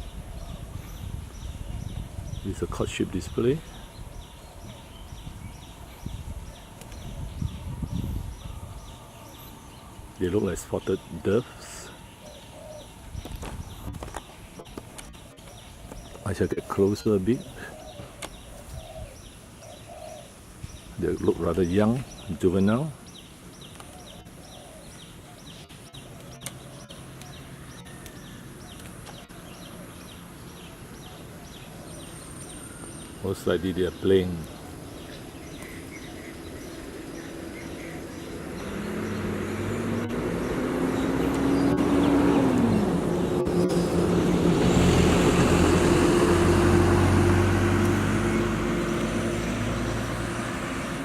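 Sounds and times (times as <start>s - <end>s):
road noise: 0.0s - 51.0s
vehicle engine humming: 25.8s - 51.0s.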